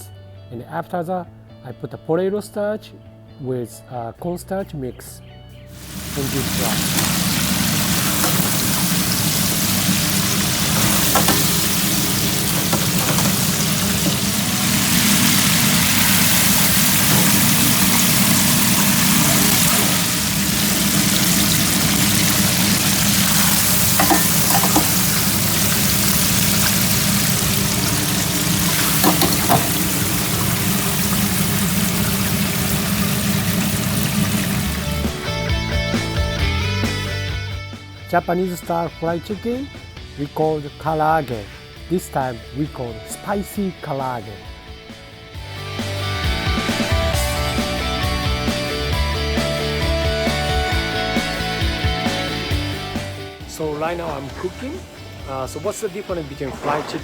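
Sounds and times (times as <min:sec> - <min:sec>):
chicken deep-frying in oil: 0:05.8 - 0:35.3.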